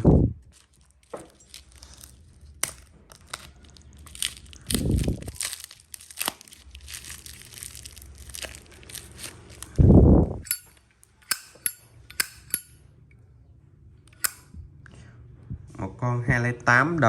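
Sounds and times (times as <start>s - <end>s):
packaging crinkling rustle: 0.4s - 10.0s.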